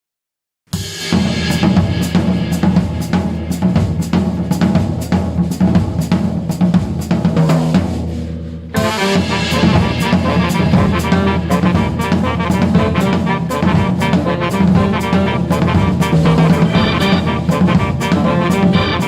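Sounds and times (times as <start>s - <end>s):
drum kit music: 0.7s - 19.0s
sustained bass tones: 8.1s - 19.0s.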